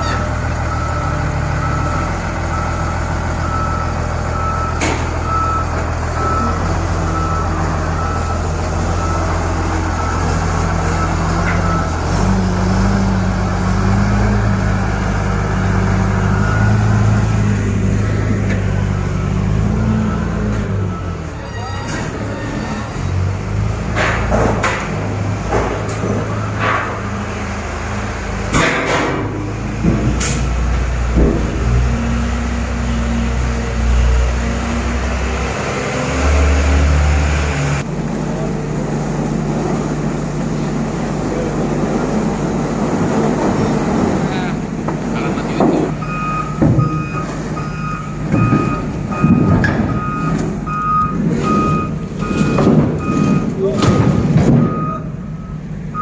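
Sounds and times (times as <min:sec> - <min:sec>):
reversing alarm beeping: 0:00.0 - 0:12.1, 0:15.6 - 0:17.4, 0:19.0 - 0:23.1, 0:45.2 - 0:56.0
heavy diesel engine running: 0:00.0 - 0:56.0
metal clanks and knocks: 0:23.9 - 0:27.2, 0:39.6 - 0:55.4
low thuds: 0:42.9 - 0:55.3.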